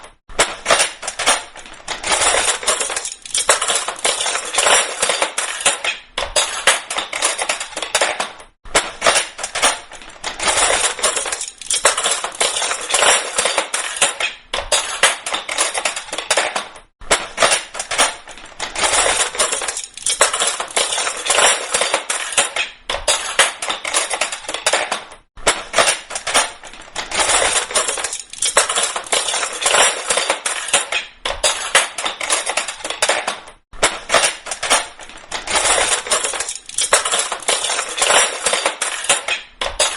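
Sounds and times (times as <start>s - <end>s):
cutlery clattering: 0.0s - 39.9s.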